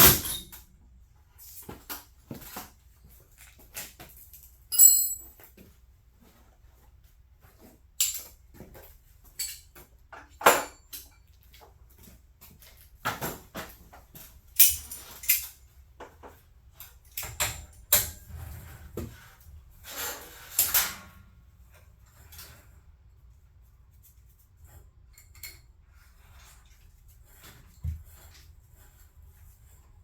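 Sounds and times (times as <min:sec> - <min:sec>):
metal tools clinking and clanking: 0:04.7 - 0:05.4, 0:09.2 - 0:11.3, 0:14.6 - 0:15.6.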